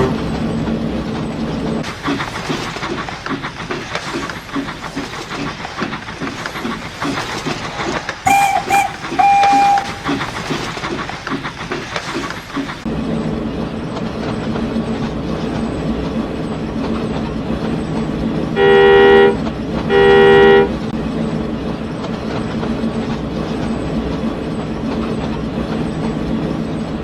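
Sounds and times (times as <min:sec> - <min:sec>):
train horn toots: 0:00.0 - 0:00.3, 0:08.3 - 0:10.6, 0:18.6 - 0:20.8
locomotive running: 0:00.0 - 0:12.8.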